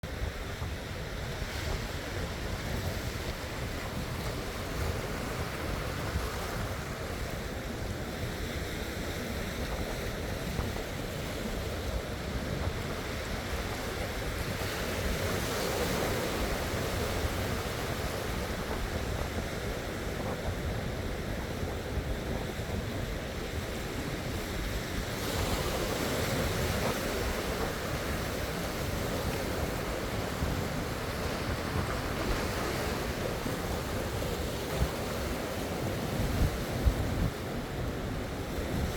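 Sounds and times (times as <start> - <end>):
ocean waves washing ashore: 0.0 - 38.9
wind rumbling on microphone: 0.0 - 38.9.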